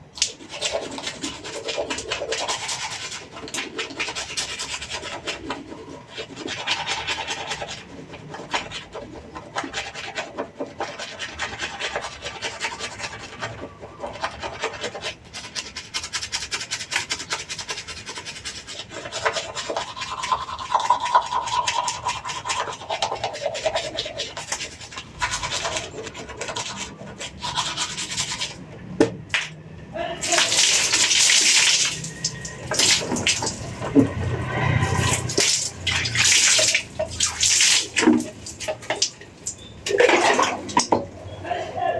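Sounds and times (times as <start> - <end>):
toothbrush scrubbing teeth: 0.0 - 29.0, 30.2 - 40.9
wet foamy mouth sounds: 30.2 - 40.8.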